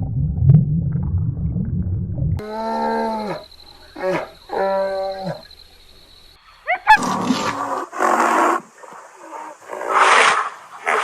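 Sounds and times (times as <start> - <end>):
long pitched animal calls: 2.4 - 5.6
rough noisy animal calls: 2.4 - 11.0.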